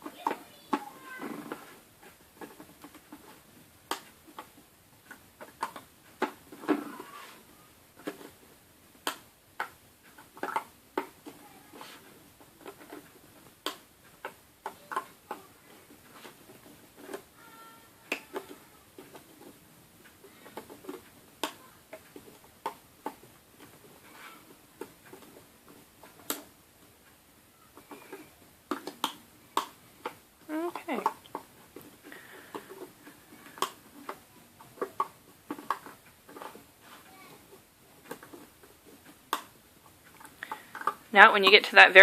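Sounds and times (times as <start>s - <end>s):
loom hook clicking on plastic pins: 8.0s - 27.2s, 27.8s - 41.6s.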